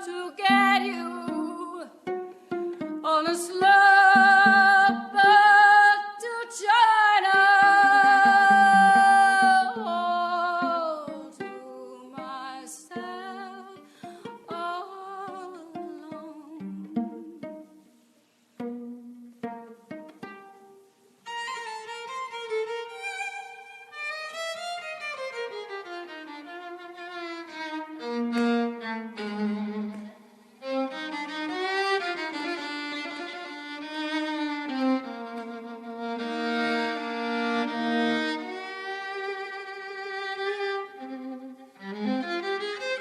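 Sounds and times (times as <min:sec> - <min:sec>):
bowed violin melody: 0:00.0 - 0:06.2, 0:06.8 - 0:43.0
violin plucked notes: 0:00.0 - 0:43.0.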